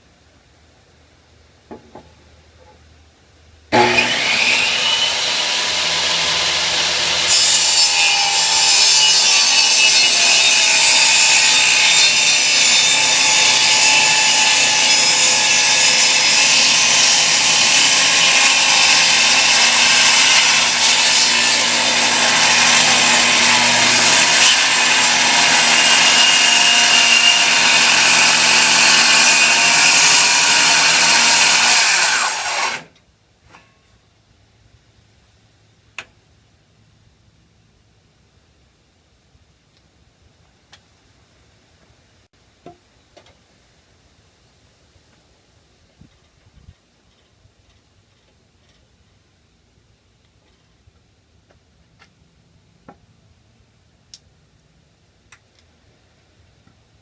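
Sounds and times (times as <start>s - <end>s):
electric woodworking tool running: 3.7s - 7.3s.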